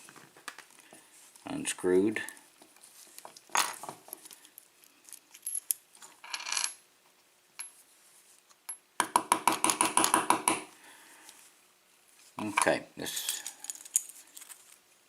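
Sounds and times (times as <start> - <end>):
lock parts scraping: 12.4 - 14.6.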